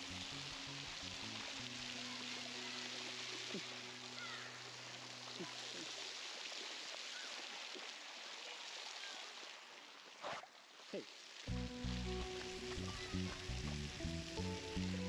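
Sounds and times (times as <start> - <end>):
running water: 0.0 - 15.0
background music: 11.5 - 15.0.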